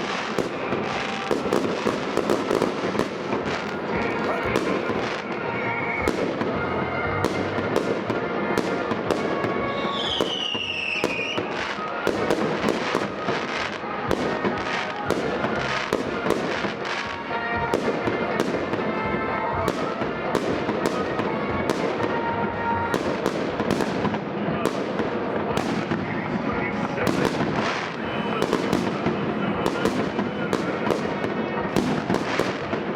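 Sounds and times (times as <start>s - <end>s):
falling firework whistle: 0.0s - 18.8s
fireworks bangs and crackles: 0.0s - 32.9s.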